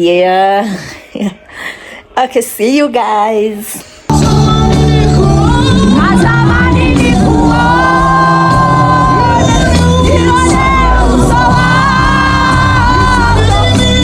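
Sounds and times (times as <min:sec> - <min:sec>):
band playing: 0:04.1 - 0:14.0
person singing long bending notes: 0:04.1 - 0:14.0.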